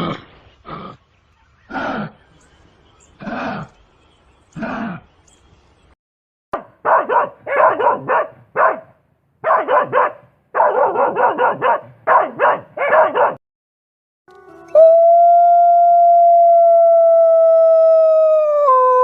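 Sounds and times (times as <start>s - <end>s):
dog barking: 6.6s - 13.4s.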